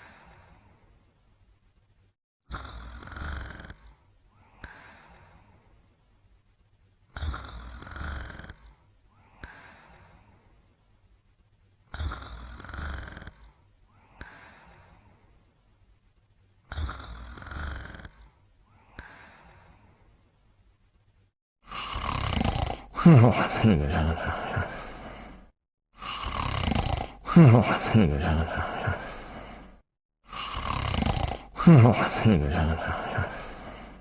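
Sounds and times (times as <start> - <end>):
slow regular snoring: 2.5 - 4.1, 7.2 - 8.8, 11.9 - 13.6, 16.7 - 18.4, 21.7 - 34.0.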